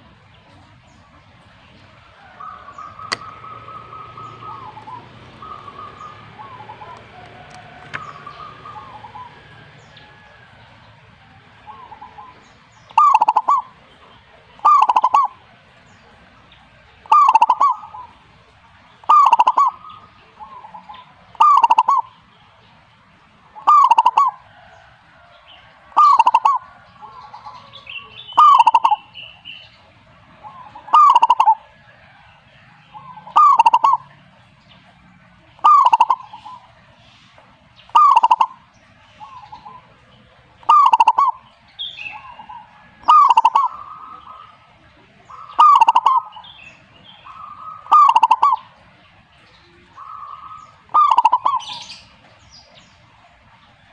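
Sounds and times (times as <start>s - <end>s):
dove cooing: 0.0s - 22.3s, 23.4s - 52.8s.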